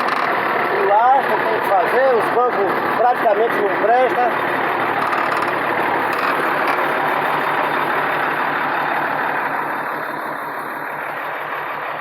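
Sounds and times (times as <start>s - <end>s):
diesel truck engine idling: 0.0s - 12.0s.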